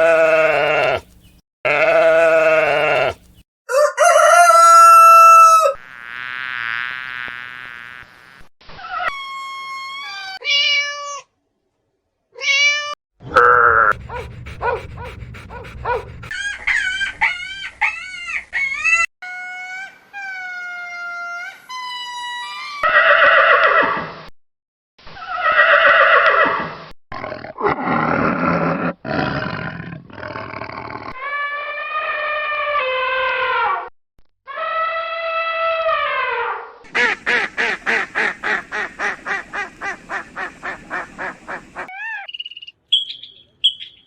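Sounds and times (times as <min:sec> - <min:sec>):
harsh rough animal calls: 0:13.2 - 0:17.3, 0:36.9 - 0:41.9
high wavering animal cries: 0:37.0 - 0:44.0.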